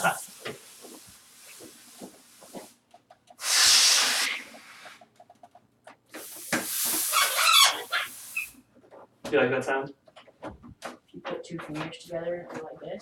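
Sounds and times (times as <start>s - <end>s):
person blowing hissing breath: 3.4s - 5.0s.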